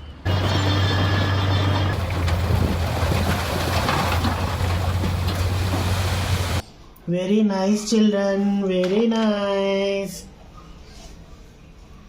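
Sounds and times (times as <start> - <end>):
truck engine running: 0.0 - 6.6.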